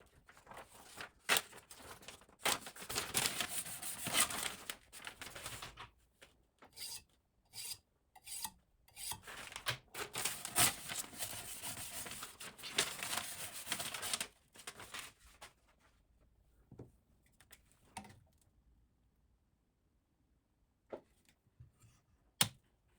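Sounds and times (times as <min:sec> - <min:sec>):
stone scraping knife edge: 0:06.8 - 0:09.2.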